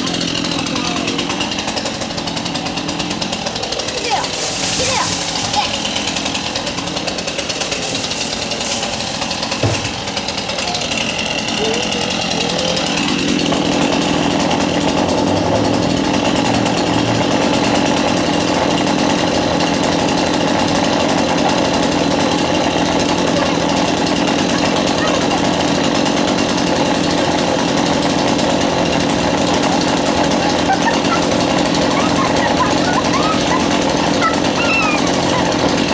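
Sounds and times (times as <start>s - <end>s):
chainsaw cutting wood: 0.0s - 35.9s.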